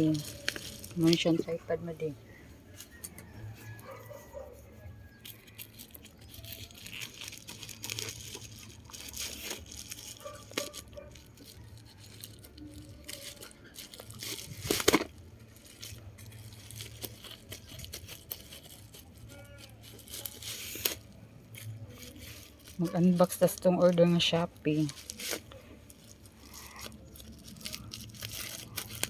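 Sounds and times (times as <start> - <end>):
packaging being torn and crinkled: 0.0 - 2.0, 2.9 - 29.0.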